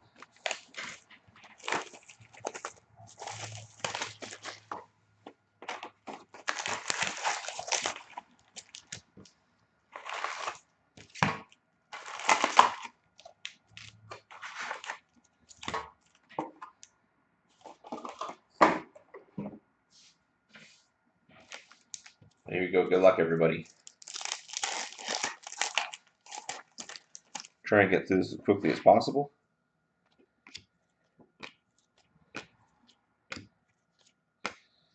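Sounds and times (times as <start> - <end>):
cardboard rustling: 0.0 - 4.9, 5.6 - 9.3, 9.9 - 16.2, 23.8 - 27.5
plastic shrink-wrap tearing: 0.2 - 4.8, 5.7 - 9.0, 10.0 - 11.2, 12.0 - 15.8, 23.6 - 27.6.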